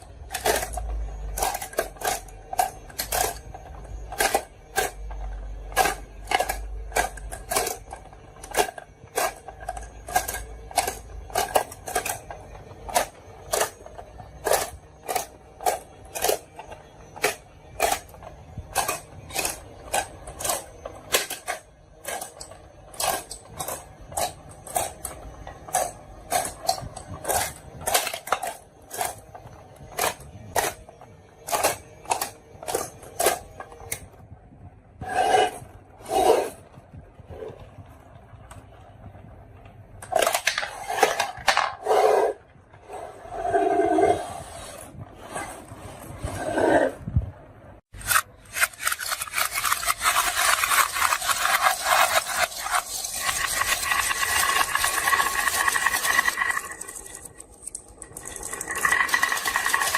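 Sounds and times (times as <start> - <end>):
marbles clacking down a track: 48.7 - 59.9.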